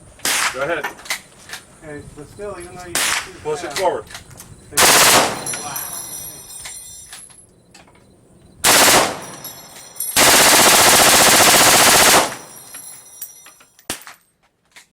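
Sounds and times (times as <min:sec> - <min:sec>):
machine gun firing bursts: 0:04.8 - 0:05.5, 0:08.6 - 0:09.4, 0:10.2 - 0:12.6.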